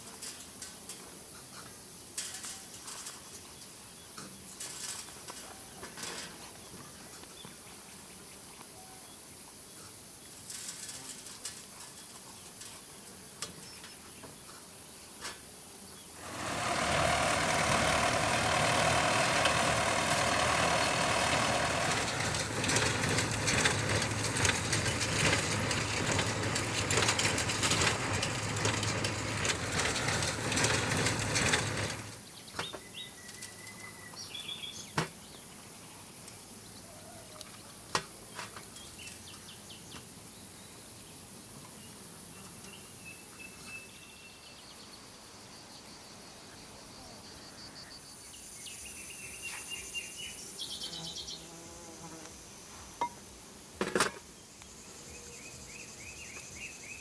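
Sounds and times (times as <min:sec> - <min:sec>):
loud rush and rapid crackling: 0:16.2 - 0:32.1.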